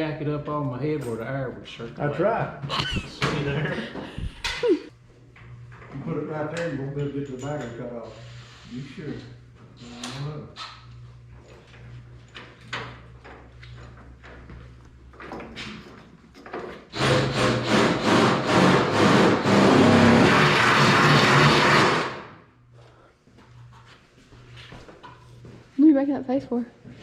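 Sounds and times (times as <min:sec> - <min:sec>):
power drill running: 0:16.9 - 0:22.4.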